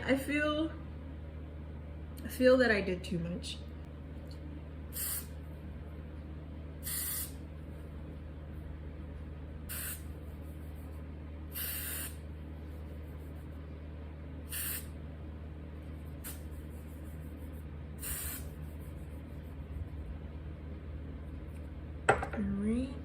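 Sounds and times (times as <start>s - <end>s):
steady low hum: 0.0s - 23.0s
hair spray hissing bursts: 4.9s - 5.3s, 6.8s - 7.4s, 9.7s - 10.1s, 11.5s - 12.2s, 14.5s - 14.9s, 16.2s - 16.5s, 18.0s - 18.5s.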